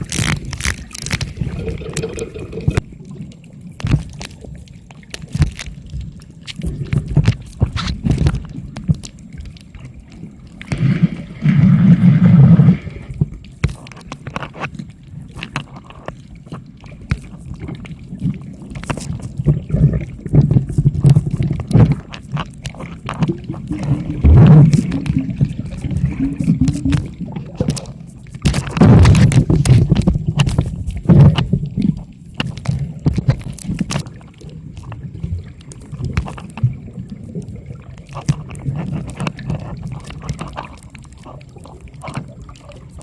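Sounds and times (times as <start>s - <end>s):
rush of water: 0.0s - 14.5s, 15.4s - 43.0s
water sloshing and gurgling: 0.0s - 43.0s
small knocks and clicks: 26.4s - 36.8s.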